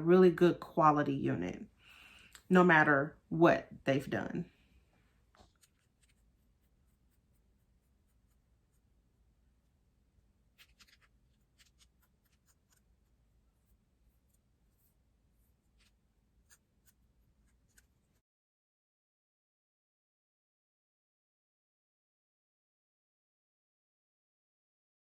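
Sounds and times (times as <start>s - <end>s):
faint low room hum: 0.0s - 18.2s.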